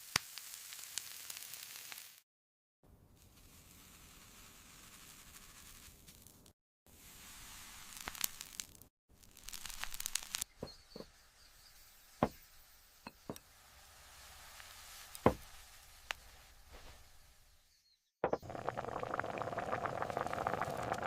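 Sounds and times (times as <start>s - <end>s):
dense crackling: 7.8s - 11.1s, 18.2s - 21.0s.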